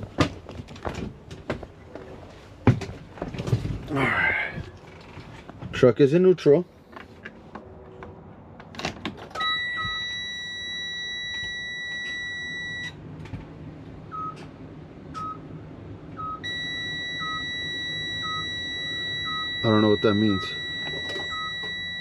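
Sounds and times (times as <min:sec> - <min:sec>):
high warning buzzer tone: 0:09.4 - 0:13.0, 0:16.4 - 0:22.0.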